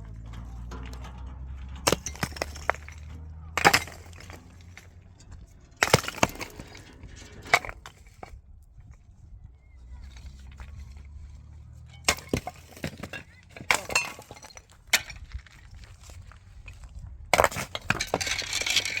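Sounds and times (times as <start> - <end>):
hard objects knocking and clattering: 0.0 - 8.4, 12.0 - 15.3, 17.3 - 19.0
low steady hum: 0.0 - 14.7.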